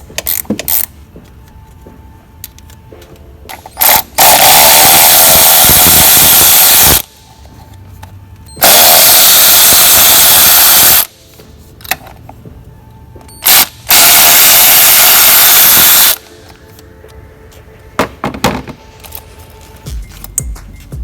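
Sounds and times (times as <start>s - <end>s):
power tool running: 3.8s - 7.1s, 8.6s - 11.2s, 13.4s - 16.3s.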